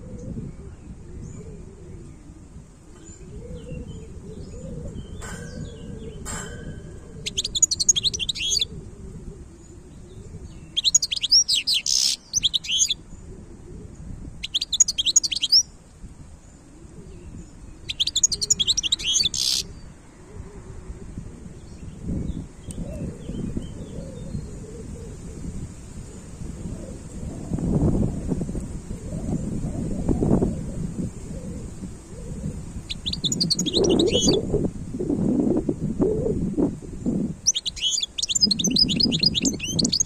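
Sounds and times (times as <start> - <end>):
thin bird calls: 3.0 - 8.7, 9.7 - 13.1, 14.4 - 15.7, 17.2 - 19.8, 32.2 - 34.4, 37.4 - 40.0
bird twittering song: 3.0 - 8.8, 9.6 - 13.3, 14.4 - 15.7, 16.4 - 20.0, 32.2 - 34.5, 37.0 - 40.0.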